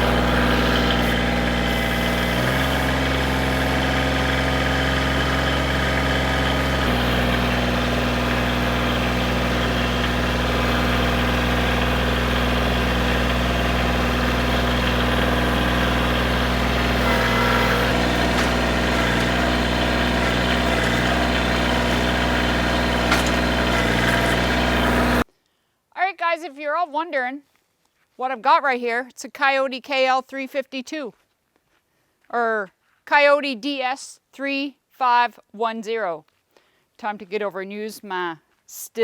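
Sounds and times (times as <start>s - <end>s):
tractor diesel engine running: 0.0s - 25.3s.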